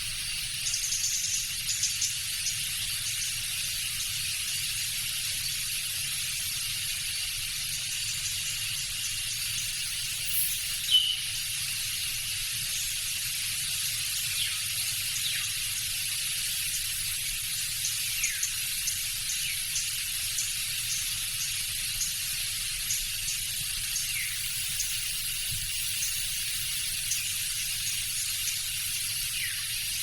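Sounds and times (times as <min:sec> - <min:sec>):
insects chorus: 0:00.0 - 0:30.0
bird chirps and whistles: 0:09.9 - 0:11.4.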